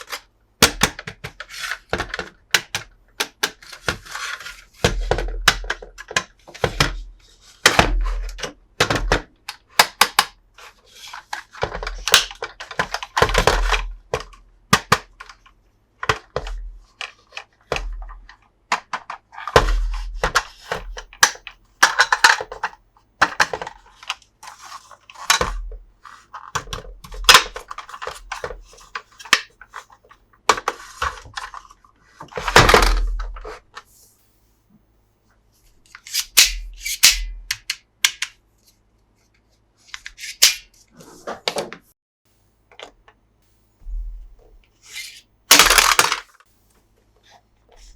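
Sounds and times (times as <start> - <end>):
plastic packaging clicks and knocks: 0.0 - 4.1, 4.8 - 7.0, 11.2 - 25.8, 26.4 - 33.5, 45.5 - 46.4.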